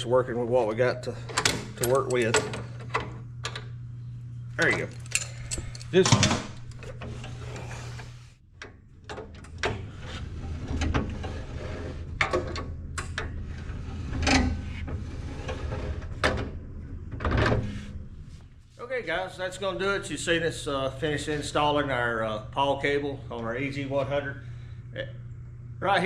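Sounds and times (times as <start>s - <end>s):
steady low hum: 0.0s - 26.0s
mechanism clicks and clunks: 1.2s - 3.8s, 4.6s - 18.1s.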